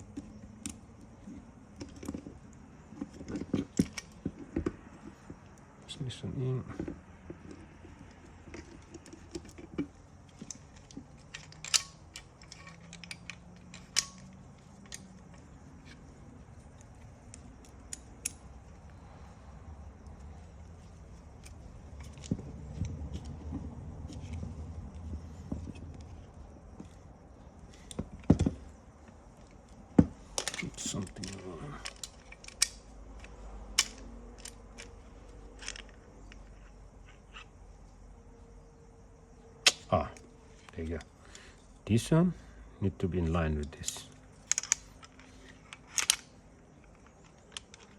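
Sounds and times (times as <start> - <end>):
plastic parts clicking and tapping: 0.0 - 5.6, 6.7 - 16.0, 27.7 - 35.0, 35.6 - 36.5, 43.6 - 47.9.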